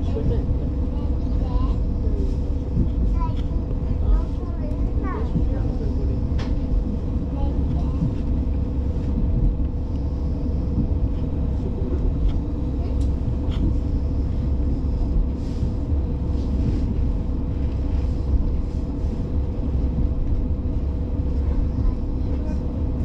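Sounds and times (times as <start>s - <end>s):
constant hum: 0.0s - 23.0s
diesel railcar rumble: 0.0s - 23.0s.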